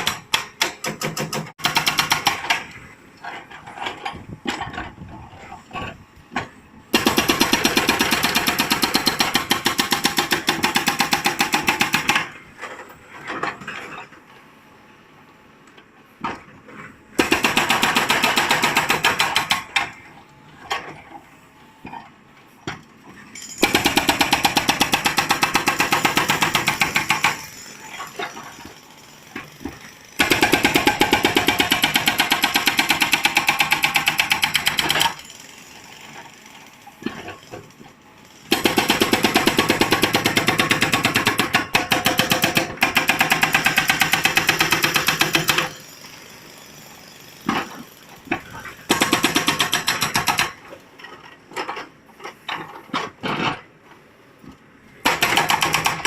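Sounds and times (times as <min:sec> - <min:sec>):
hydraulic rock breaker hammering: 0:23.5 - 0:36.4, 0:38.4 - 0:45.9, 0:47.4 - 0:50.7, 0:55.0 - 0:56.0.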